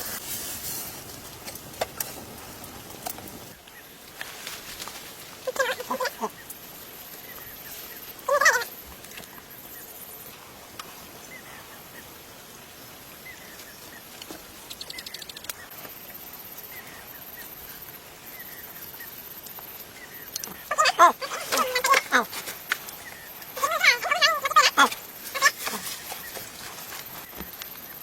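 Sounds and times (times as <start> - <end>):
faint high hiss: 0.0 - 28.0
faint chirps: 13.2 - 28.0.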